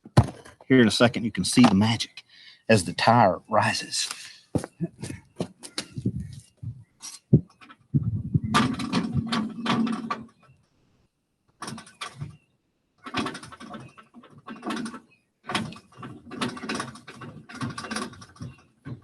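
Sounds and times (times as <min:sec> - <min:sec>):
jack clicking and creaking: 0:04.0 - 0:10.4, 0:13.0 - 0:19.0.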